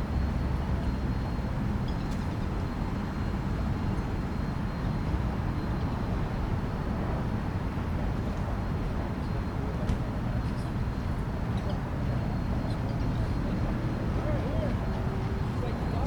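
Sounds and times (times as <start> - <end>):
distant city traffic rumble: 4.9 - 16.0.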